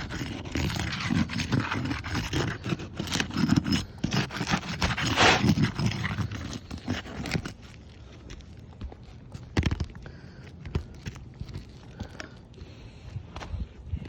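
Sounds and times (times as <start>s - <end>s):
tools scraping roof shingles: 0.0s - 7.8s.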